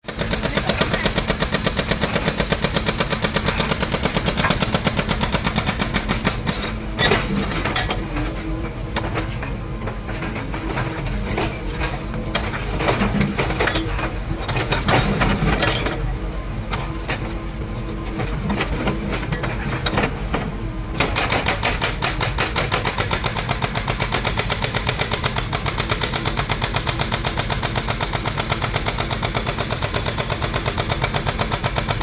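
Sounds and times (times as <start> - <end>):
construction machine running: 0.0 - 32.0
fast mechanical hammering: 21.0 - 32.0.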